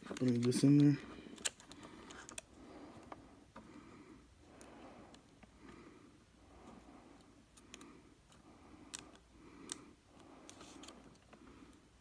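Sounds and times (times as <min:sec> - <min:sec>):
small plastic parts clicking: 0:00.0 - 0:03.2, 0:07.2 - 0:11.8.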